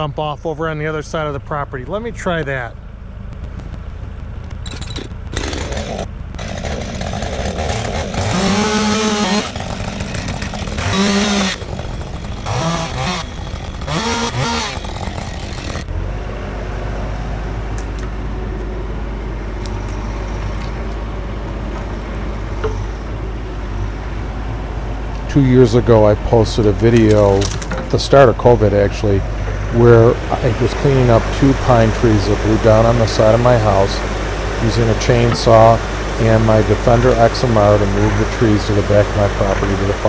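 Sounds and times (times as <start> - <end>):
low engine hum: 0.3 - 40.0
chainsaw revving: 5.3 - 15.9, 25.6 - 40.0.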